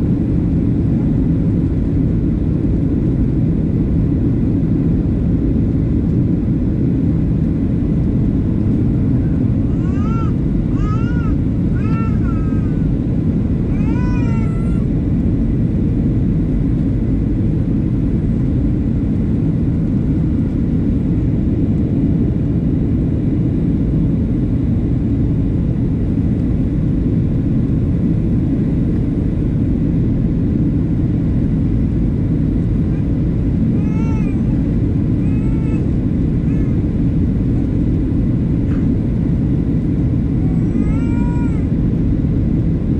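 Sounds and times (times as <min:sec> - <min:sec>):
airliner cabin engine rumble: 0:00.0 - 0:42.9.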